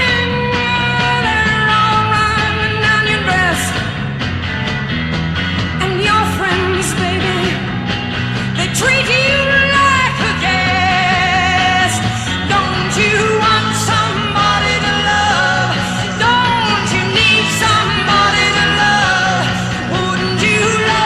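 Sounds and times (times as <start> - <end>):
rock band playing: 0.0 - 21.0.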